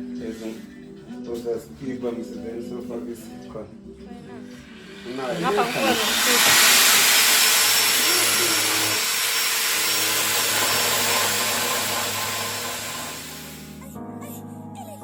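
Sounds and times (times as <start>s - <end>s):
music: 0.0s - 15.0s
power tool hissing rush: 4.5s - 13.8s.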